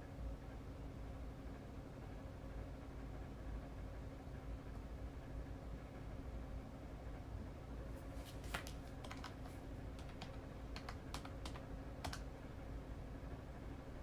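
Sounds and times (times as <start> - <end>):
faint steady hum: 0.0 - 14.0
keys tapping: 8.5 - 12.2.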